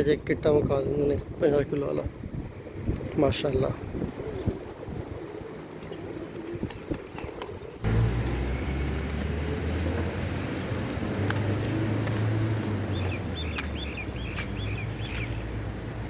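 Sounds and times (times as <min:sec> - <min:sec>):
small bird chirping: 0:12.9 - 0:15.5.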